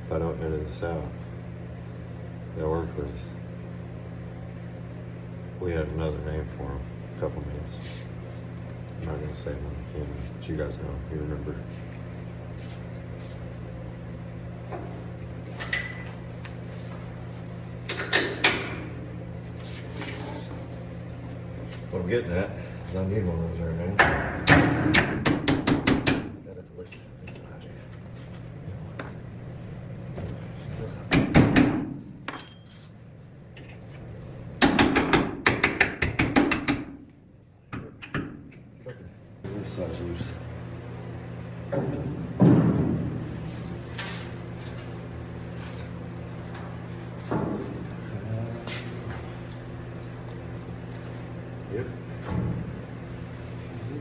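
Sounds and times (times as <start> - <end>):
steady low hum: 0.0 - 54.0
metallic clink: 32.3 - 33.0.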